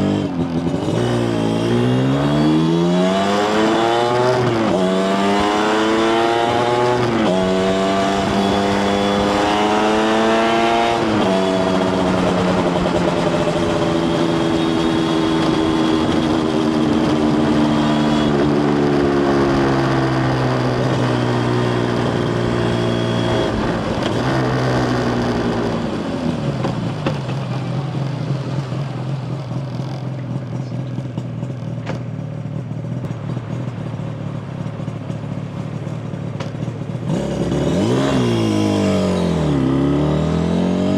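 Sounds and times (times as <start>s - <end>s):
motorcycle engine accelerating: 0.0s - 40.9s
engine idling: 26.8s - 37.1s.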